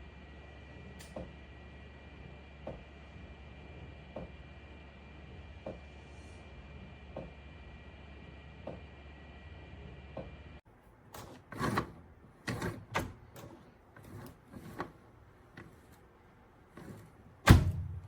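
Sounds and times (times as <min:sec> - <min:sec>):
microwave oven knocks and clunks: 0:17.4 - 0:18.0.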